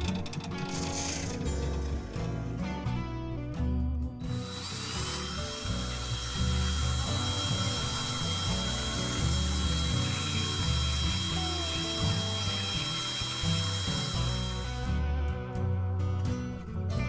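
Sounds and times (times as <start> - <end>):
spinning wheel hissing: 0.0 - 2.8, 4.3 - 15.0
bench grinder whining: 0.0 - 3.0, 4.2 - 15.0
music with steady bass beat: 0.0 - 17.0.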